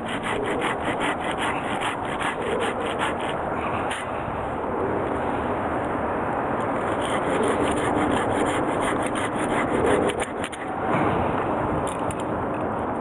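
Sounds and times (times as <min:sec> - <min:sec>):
hand saw cutting wood: 0:00.0 - 0:04.1, 0:06.8 - 0:10.6.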